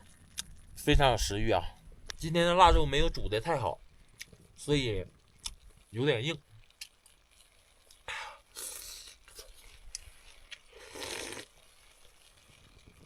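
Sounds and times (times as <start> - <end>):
person eating: 7.9 - 11.6.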